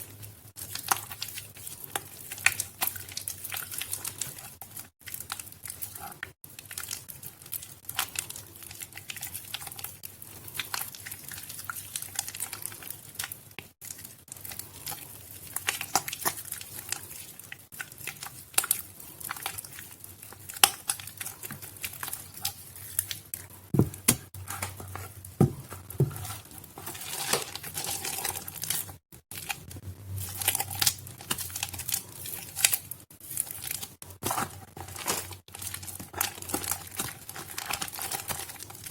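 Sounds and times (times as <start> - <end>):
wet soap being squished by hand: 0.6 - 29.6.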